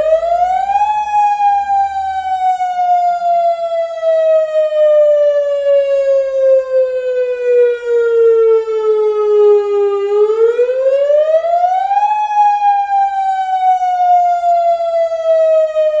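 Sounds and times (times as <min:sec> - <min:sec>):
warning siren wailing: 0:00.0 - 0:16.0.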